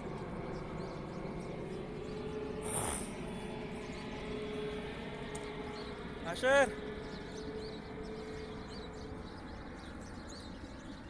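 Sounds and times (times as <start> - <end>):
distant jet airliner rumble: 0.0 - 11.0
brief hiss: 2.6 - 3.1.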